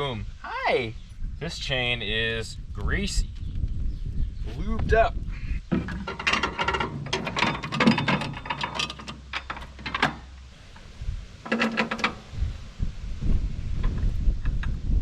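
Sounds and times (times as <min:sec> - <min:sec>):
metal chain links rattling: 0:05.8 - 0:10.4.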